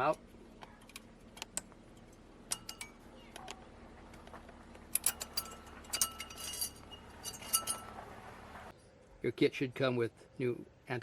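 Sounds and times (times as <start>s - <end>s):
metal clips clicking and clinking: 0.0s - 3.6s, 4.8s - 8.0s.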